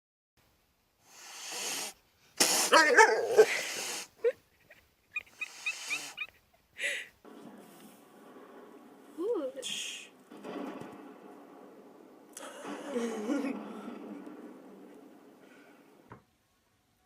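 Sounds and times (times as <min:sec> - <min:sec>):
dog whimpering and whining: 0:02.7 - 0:03.6, 0:04.7 - 0:06.4.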